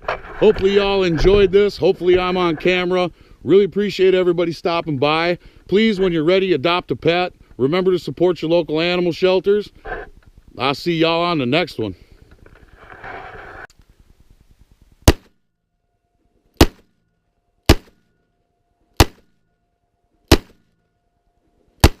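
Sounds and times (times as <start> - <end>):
rustle: 0.0 - 15.5.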